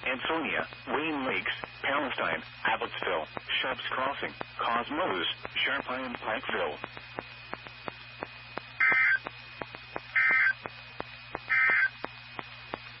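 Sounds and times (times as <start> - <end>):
warbling digital data tones: 8.8 - 9.3, 10.1 - 10.6, 11.5 - 12.0.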